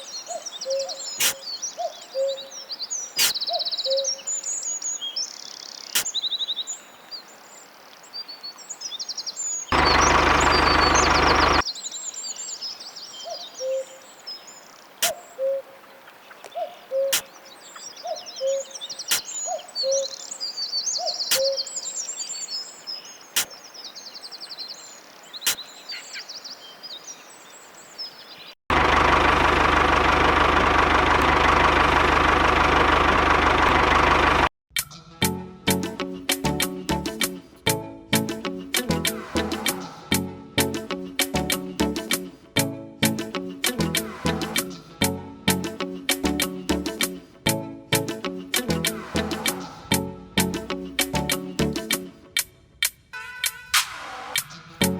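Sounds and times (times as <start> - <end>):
songbirds chirping: 0.0 - 34.4
loud steady whirring: 9.8 - 11.6, 28.7 - 34.5.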